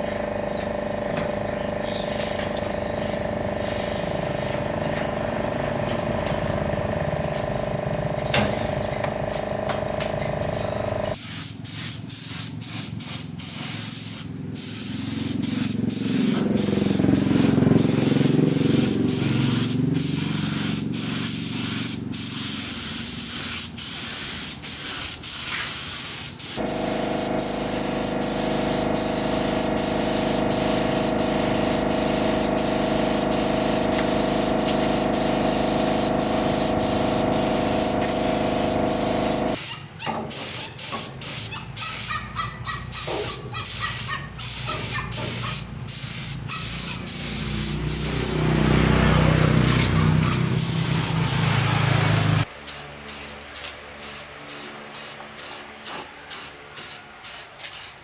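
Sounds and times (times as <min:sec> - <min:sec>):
air spray gun hissing: 0:03.4 - 0:04.6, 0:08.4 - 0:42.2, 0:42.9 - 0:48.9, 0:50.6 - 0:58.0
steady machine hum: 0:26.6 - 0:39.6.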